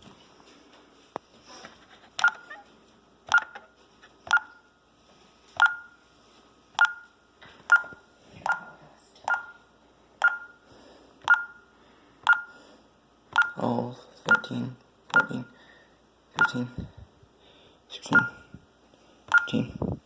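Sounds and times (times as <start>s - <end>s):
alarm keypad beeping: 2.2s - 2.5s, 4.3s - 4.7s, 5.6s - 6.0s, 6.8s - 8.6s, 9.3s - 9.6s, 10.2s - 10.6s, 11.3s - 11.7s, 12.3s - 12.6s, 13.4s - 13.6s, 14.3s - 14.5s, 15.2s - 15.6s, 16.4s - 16.7s, 18.2s - 18.4s, 19.3s - 19.7s.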